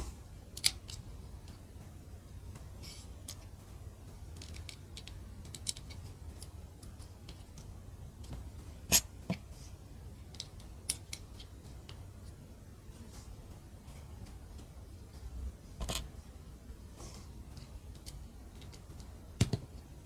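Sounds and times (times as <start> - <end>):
plastic bricks clicking: 4.4 - 6.5.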